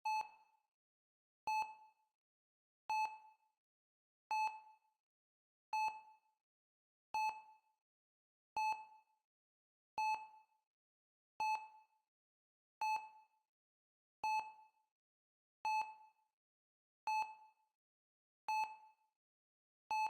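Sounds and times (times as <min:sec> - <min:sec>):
heart rate monitor beeping: 0:00.0 - 0:00.3.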